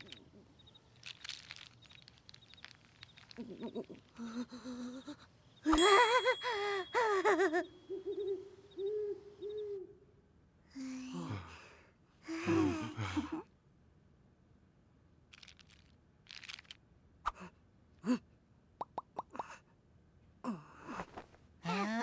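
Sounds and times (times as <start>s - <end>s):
sharp squeaks and pops: 0.0s - 5.2s.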